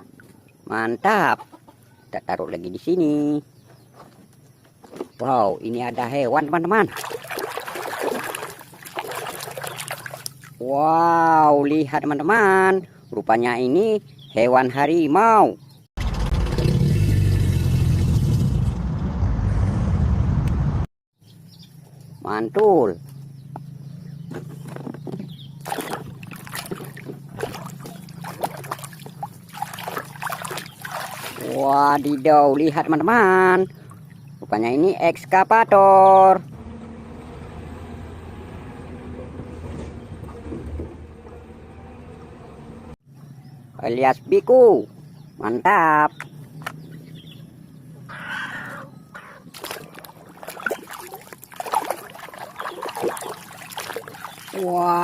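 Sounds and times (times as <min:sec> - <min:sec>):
water splashing and sloshing: 0:04.2 - 0:10.7, 0:24.3 - 0:34.6, 0:36.5 - 0:43.0, 0:49.4 - 0:55.0.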